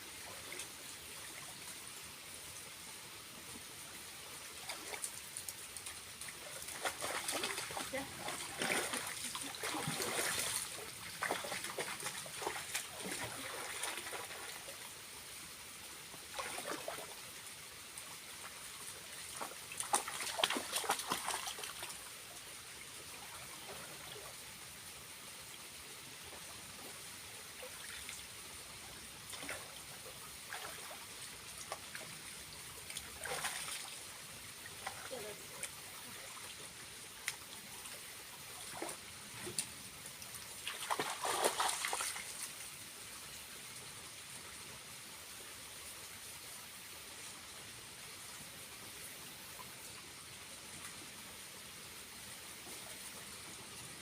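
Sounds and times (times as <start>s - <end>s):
water trickling down waterfall: 0.0s - 54.0s
water splashing: 4.6s - 14.8s, 16.3s - 17.2s, 19.3s - 22.1s, 29.3s - 32.2s, 32.8s - 34.1s, 40.5s - 42.6s.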